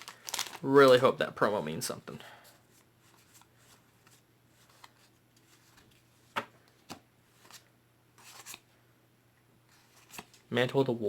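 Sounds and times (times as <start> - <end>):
cards rustling: 0.0 - 1.0, 2.7 - 8.6, 9.7 - 10.4
cards snapping and sliding: 8.2 - 8.6.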